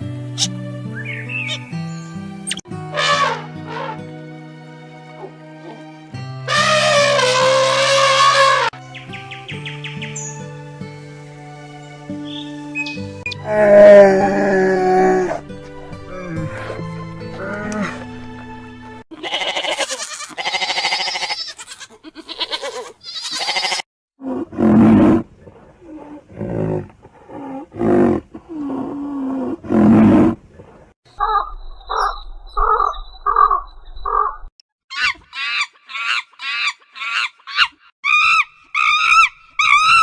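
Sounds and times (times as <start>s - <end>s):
evenly spaced animal calls: 3.0s - 4.1s, 6.5s - 8.8s, 31.1s - 40.0s.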